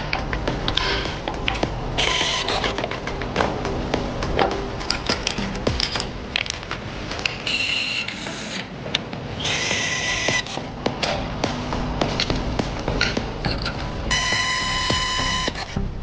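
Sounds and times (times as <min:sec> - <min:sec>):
metal clicks and knocks: 0:00.0 - 0:07.4.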